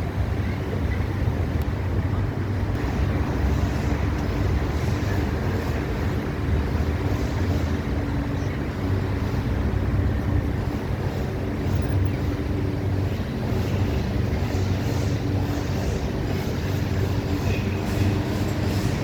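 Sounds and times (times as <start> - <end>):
rushing wind: 0.0 - 19.0.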